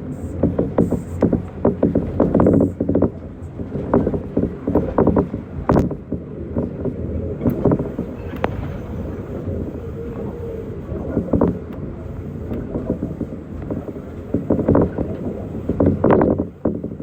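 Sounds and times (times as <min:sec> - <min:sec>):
faint steady whine: 0:00.0 - 0:17.0
monorail train rumbling: 0:00.0 - 0:17.0.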